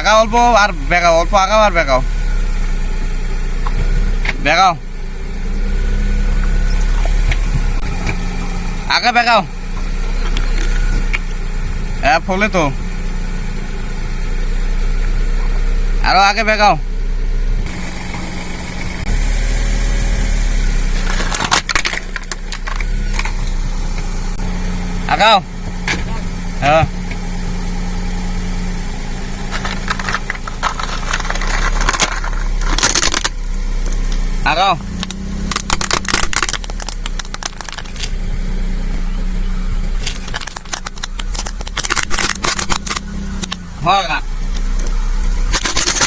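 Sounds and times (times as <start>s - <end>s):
car running: 0.0s - 46.0s
brittle object crushed under wheels: 20.9s - 23.4s, 29.5s - 34.2s, 34.9s - 38.2s, 40.0s - 43.7s, 44.8s - 46.0s
crackling and clicking: 21.0s - 23.4s, 29.5s - 34.2s, 34.9s - 38.2s, 40.0s - 43.8s, 44.5s - 46.0s.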